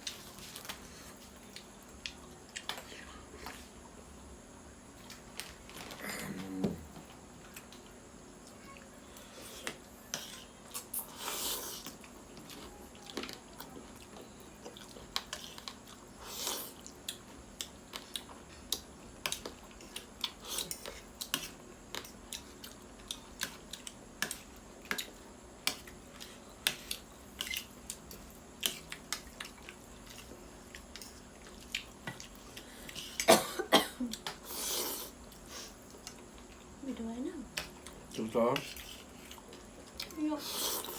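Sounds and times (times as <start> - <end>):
chewing and mouth smacks: 0.0 - 2.9, 11.8 - 16.1, 16.8 - 33.0.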